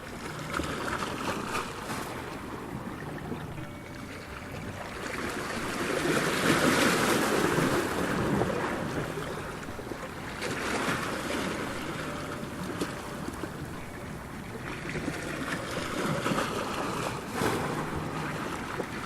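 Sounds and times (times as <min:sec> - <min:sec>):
ocean waves breaking: 0:00.0 - 0:19.0.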